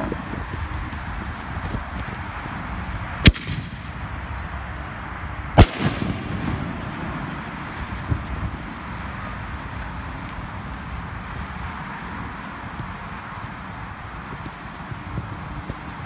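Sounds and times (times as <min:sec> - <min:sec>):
firework bangs with echo: 0:03.2 - 0:04.1, 0:05.6 - 0:07.5.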